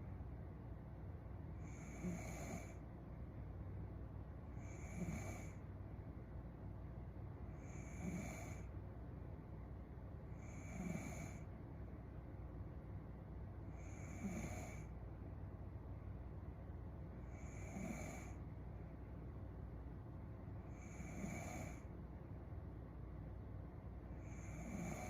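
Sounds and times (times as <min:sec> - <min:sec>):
woman snoring: 0:01.6 - 0:02.8, 0:04.6 - 0:05.6, 0:07.6 - 0:08.7, 0:10.4 - 0:11.5, 0:13.8 - 0:14.9, 0:17.3 - 0:18.4, 0:20.7 - 0:21.8, 0:24.2 - 0:25.0.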